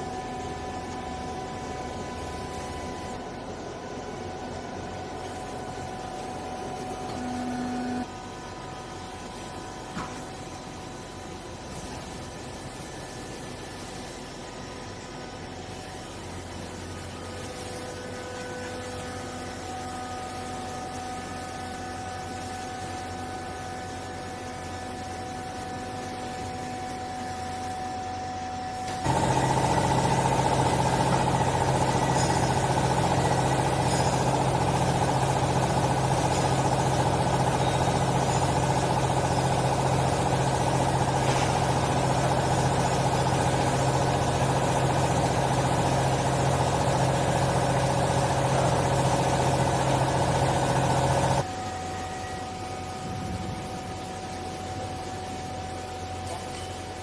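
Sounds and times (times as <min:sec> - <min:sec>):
hydraulic pump humming: 0:00.0 - 0:12.5, 0:27.7 - 0:52.0.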